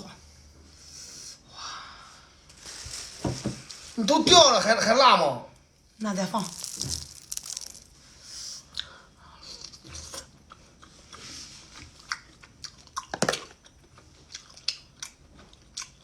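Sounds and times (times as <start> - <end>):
person chewing seafood: 6.5 - 7.9, 8.8 - 16.0.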